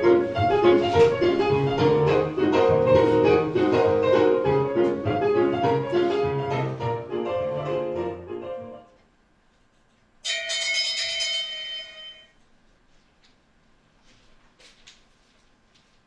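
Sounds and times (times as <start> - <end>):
piano music: 0.0 - 9.0
bright ringing tone: 10.2 - 12.4.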